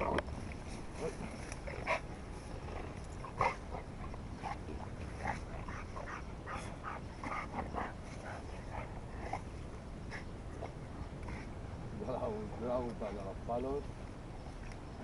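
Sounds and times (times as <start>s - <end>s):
dog gnawing a stick: 0.0s - 11.6s.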